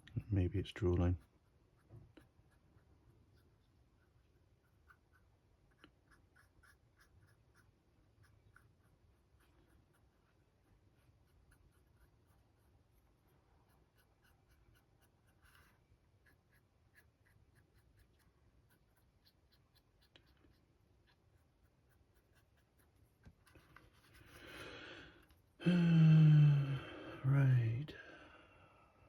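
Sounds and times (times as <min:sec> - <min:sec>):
paintbrush dabbing ticks: 0:00.4 - 0:23.5.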